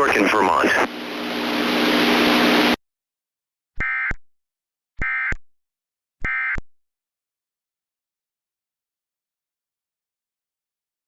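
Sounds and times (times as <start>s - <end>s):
static-like hiss: 0.0s - 2.8s.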